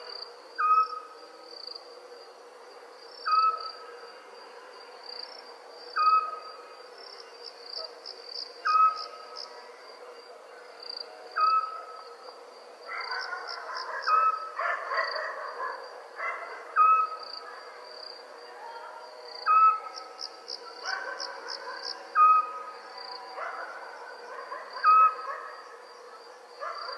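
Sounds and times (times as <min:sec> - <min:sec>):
night insects trilling: 0:00.0 - 0:26.9.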